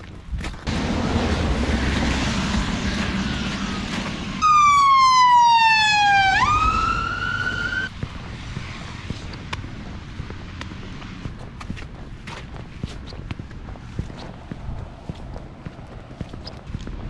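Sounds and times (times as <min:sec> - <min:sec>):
passing traffic rush: 0:00.5 - 0:17.0
siren wailing: 0:00.7 - 0:07.9.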